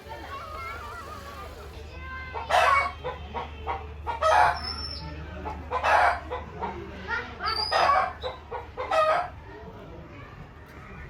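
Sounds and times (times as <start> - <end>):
chickens clucking and squawking: 0.0 - 4.8, 5.4 - 9.4.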